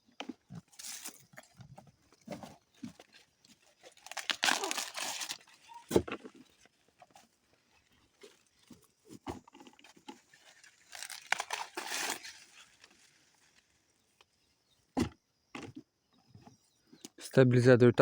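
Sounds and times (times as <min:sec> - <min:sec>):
dry corn leaves rustling: 0:00.5 - 0:14.3.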